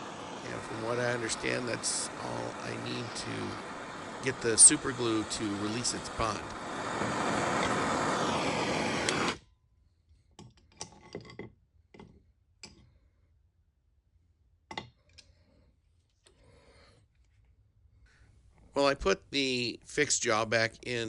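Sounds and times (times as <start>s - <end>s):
propane torch hissing: 0.0s - 9.4s.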